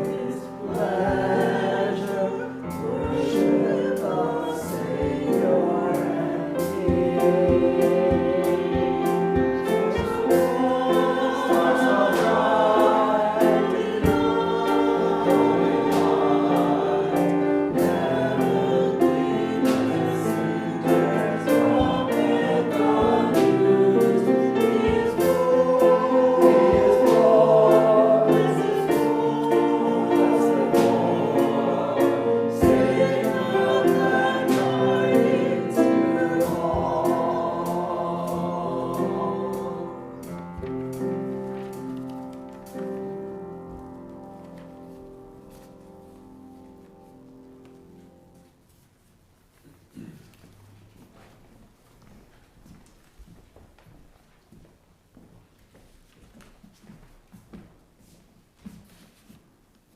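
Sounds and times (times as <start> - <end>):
choir singing a hymn: 0.0 - 48.4.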